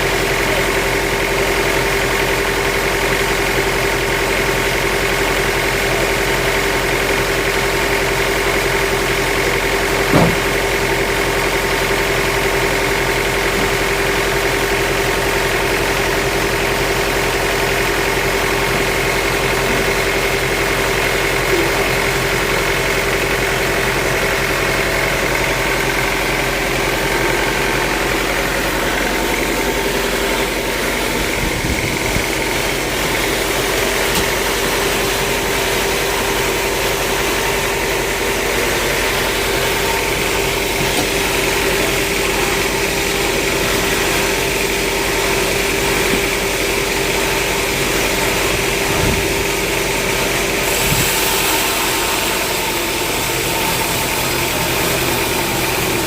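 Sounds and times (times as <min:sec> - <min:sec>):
sawmill machinery running: 0:00.0 - 0:56.0
sharp knock: 0:10.0 - 0:10.6.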